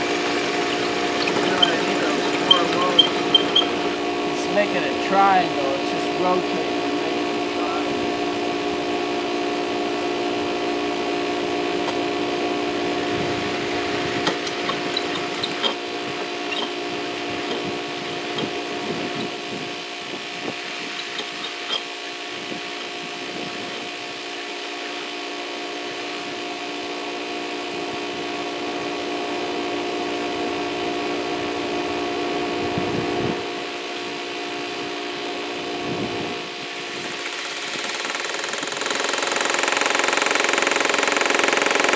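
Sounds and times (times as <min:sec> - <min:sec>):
masonry drill grinding into brick: 0:00.0 - 0:04.8, 0:11.8 - 0:25.0, 0:36.7 - 0:41.9
grit ticking: 0:00.1 - 0:04.1, 0:14.1 - 0:23.9.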